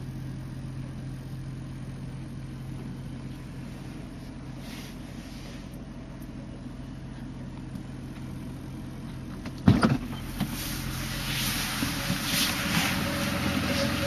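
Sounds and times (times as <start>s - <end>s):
car engine idling: 0.0s - 14.0s
scratchy metallic hiss: 10.2s - 14.0s.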